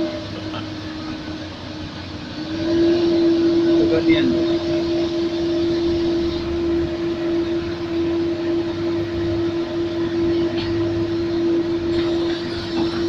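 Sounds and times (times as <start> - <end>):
excavator diesel engine running: 0.0 - 13.0.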